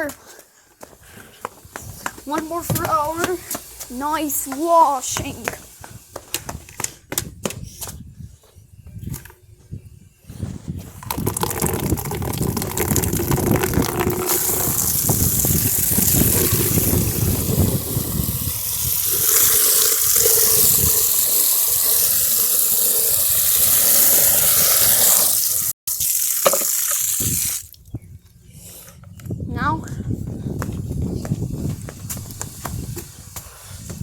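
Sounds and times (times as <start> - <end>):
dishwasher water rushing and splashing: 11.4 - 27.7.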